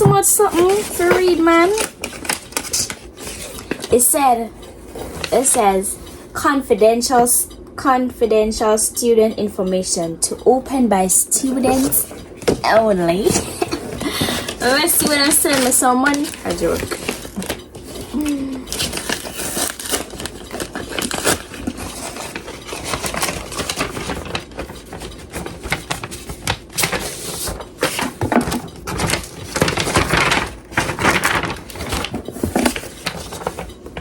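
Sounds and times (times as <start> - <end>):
papers and packaging rustling: 0.0 - 4.0, 11.5 - 34.0
small items clicking and clattering: 11.7 - 34.0.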